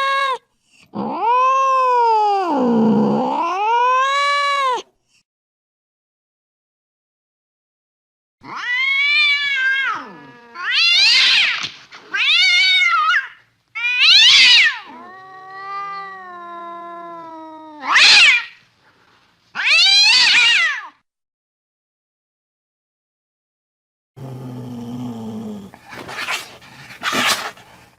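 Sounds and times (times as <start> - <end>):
cat low moan: 0.0 - 4.9, 8.4 - 11.0, 14.7 - 18.0, 24.2 - 27.2
cat meowing: 8.4 - 18.6, 19.6 - 21.0.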